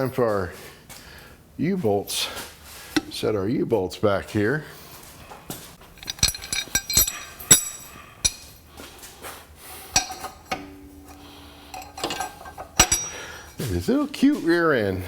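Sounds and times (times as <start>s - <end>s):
metal bolts knocking on metal: 5.8s - 8.7s, 10.0s - 13.7s.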